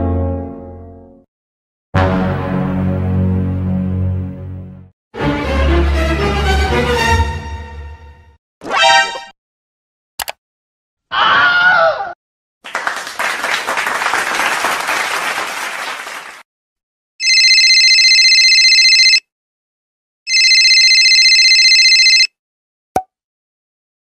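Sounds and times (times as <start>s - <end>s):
short click: 10.2s - 10.4s
applause: 12.6s - 16.5s
telephone ringing: 17.2s - 19.2s, 20.3s - 22.3s.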